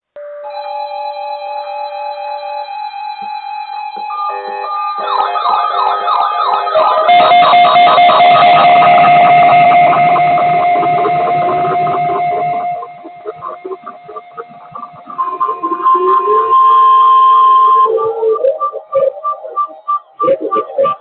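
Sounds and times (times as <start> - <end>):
loud steady siren tone: 0.2 - 21.0
music: 0.2 - 21.0
siren sweeping up and down: 0.2 - 21.0.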